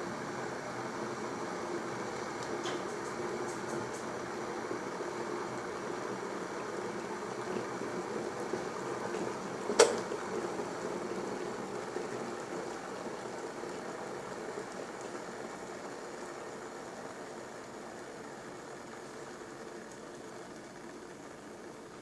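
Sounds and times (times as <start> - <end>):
kettle water boiling: 0.0 - 22.0
kettle switch click: 9.8 - 10.1.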